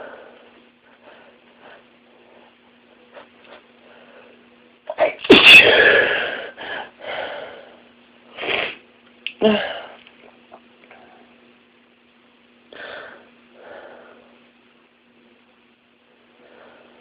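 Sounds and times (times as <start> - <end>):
noisy breaths: 0.0 - 4.6, 5.9 - 8.0, 12.6 - 14.6, 16.2 - 17.0
person sneezing: 4.9 - 6.6.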